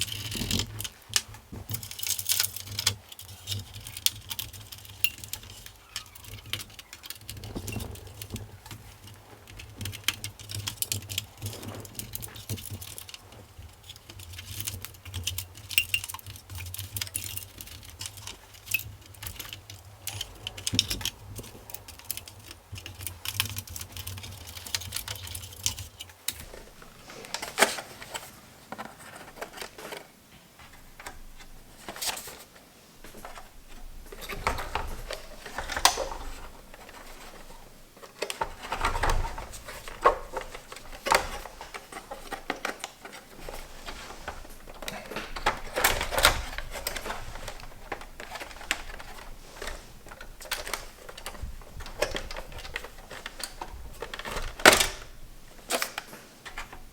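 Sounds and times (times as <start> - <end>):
clicks and taps of handled parts: 0.0 - 26.6.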